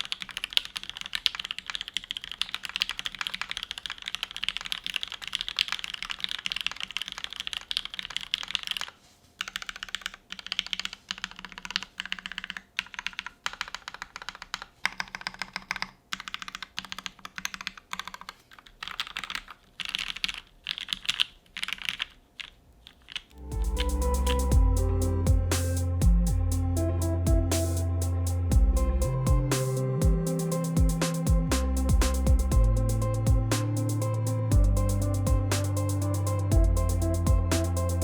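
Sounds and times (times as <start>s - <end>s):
mechanical keyboard typing: 0.0s - 24.4s.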